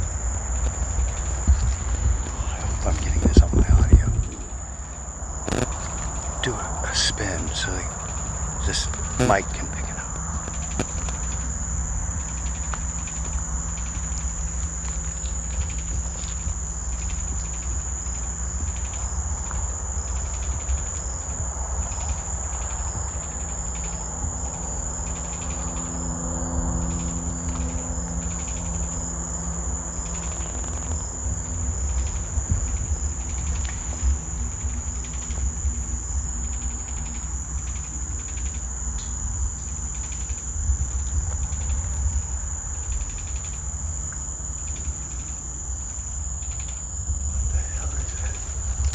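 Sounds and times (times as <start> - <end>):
low rumble: 0.0 - 11.0
high-pitched insect trill: 0.0 - 48.9
pulsed insect chirping: 0.0 - 48.9.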